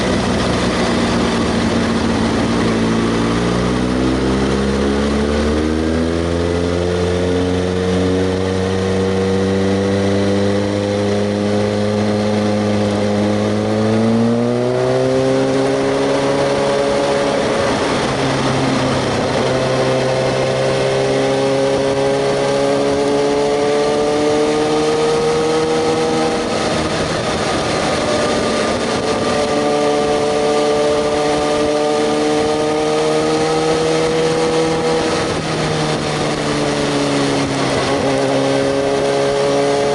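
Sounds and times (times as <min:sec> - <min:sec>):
motorcycle engine running: 0:00.0 - 0:39.9
steady rushing noise: 0:00.0 - 0:39.9.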